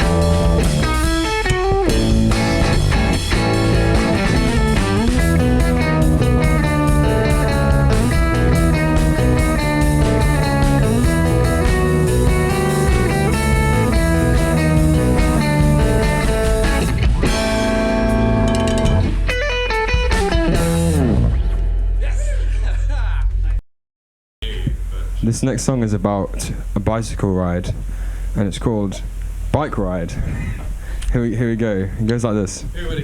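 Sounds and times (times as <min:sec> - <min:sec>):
live rock band playing: 0:00.0 - 0:21.8
electric guitar: 0:00.0 - 0:22.0
held guitar chord: 0:00.0 - 0:22.0.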